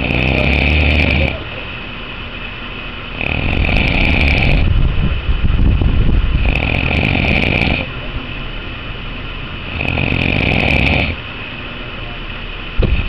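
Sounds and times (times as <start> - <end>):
dog snoring: 0.0 - 1.5, 3.1 - 4.8, 6.4 - 7.9, 9.6 - 11.2, 12.8 - 13.0.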